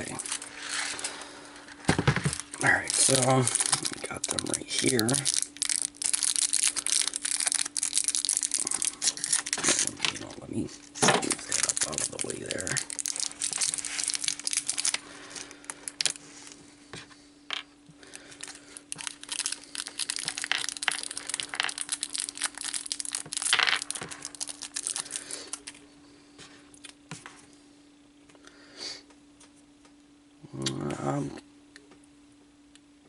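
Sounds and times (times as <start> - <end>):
plastic packaging crinkling and tearing: 0.0 - 1.2, 2.2 - 16.6, 18.1 - 25.8
steady low hum: 0.0 - 33.0.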